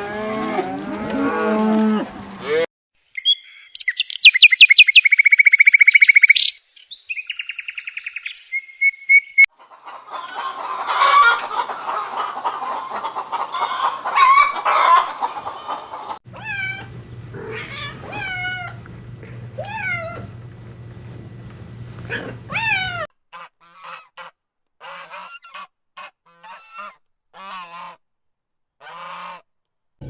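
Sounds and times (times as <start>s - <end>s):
calls rising and falling in pitch: 9.6s - 18.8s
loud animal calls: 9.6s - 23.1s
steady low hum: 10.5s - 23.1s.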